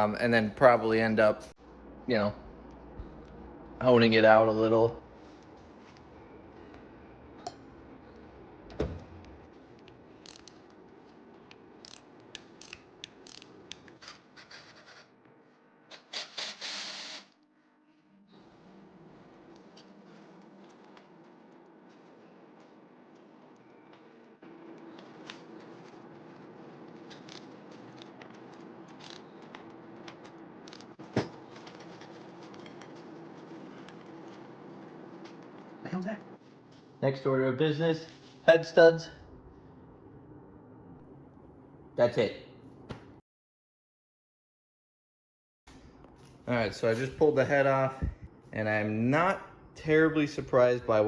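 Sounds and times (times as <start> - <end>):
faint steady hum: 0.0 - 16.0, 16.9 - 43.2, 45.7 - 51.0
tools and parts clicking: 10.2 - 10.6, 11.8 - 14.1.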